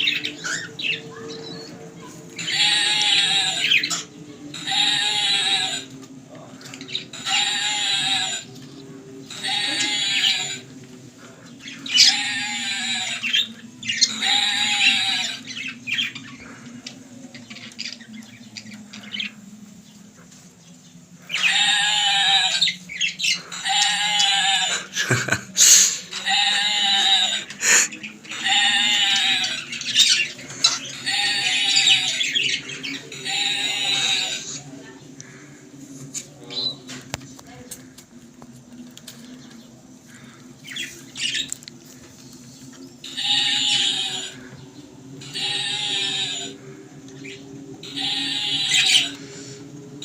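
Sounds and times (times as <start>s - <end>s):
sheep bleating: 2.4s - 3.9s, 4.6s - 5.9s, 7.2s - 8.5s, 9.3s - 10.7s, 11.9s - 13.4s, 14.0s - 15.5s, 21.4s - 22.8s, 23.5s - 25.0s, 26.1s - 29.6s, 30.9s - 32.3s, 33.1s - 34.6s, 43.0s - 44.5s, 45.2s - 46.6s, 47.8s - 49.2s.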